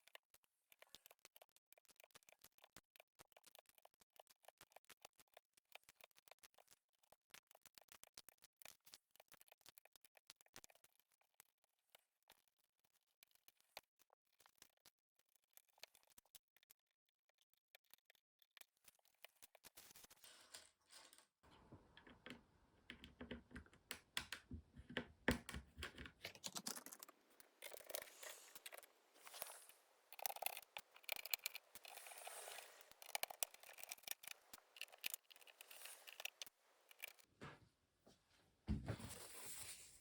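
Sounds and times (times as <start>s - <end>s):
mechanical keyboard typing: 22.0s - 37.3s.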